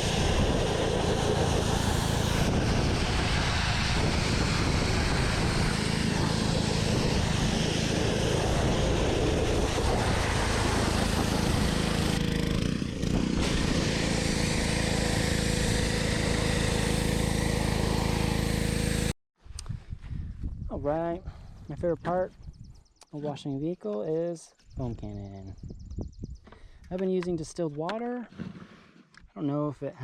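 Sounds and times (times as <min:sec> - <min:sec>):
motor hum: 0:00.0 - 0:19.1
pressure washer spraying: 0:00.0 - 0:19.1.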